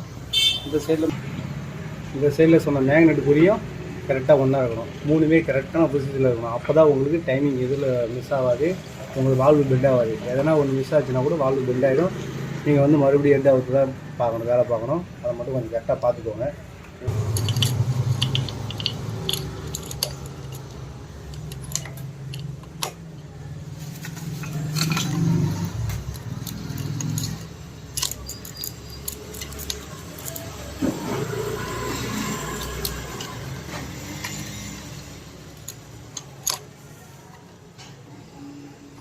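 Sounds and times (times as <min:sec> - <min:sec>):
metallic clinks of tools: 0:17.1 - 0:23.0, 0:24.2 - 0:30.5, 0:31.9 - 0:36.7.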